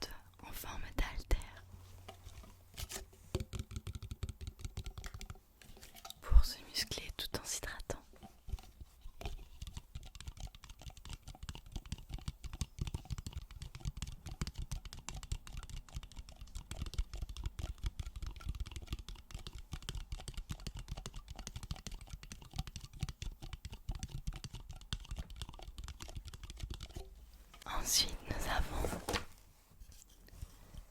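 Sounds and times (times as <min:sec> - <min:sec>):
tapping on plastic water bottle: 0:03.3 - 0:05.4.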